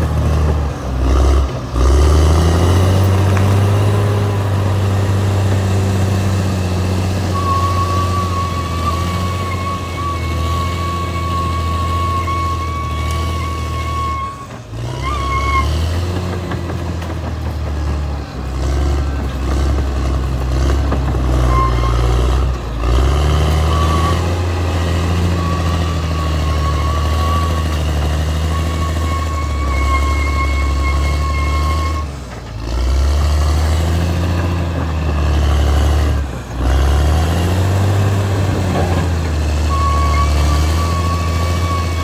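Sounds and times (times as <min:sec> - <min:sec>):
bulldozer diesel engine running: 0:00.0 - 0:42.0.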